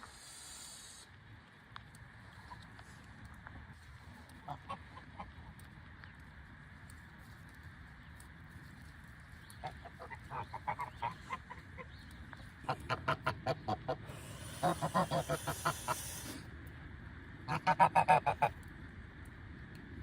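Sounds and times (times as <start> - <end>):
geese honking: 9.6 - 11.9, 12.6 - 16.4, 17.5 - 18.5.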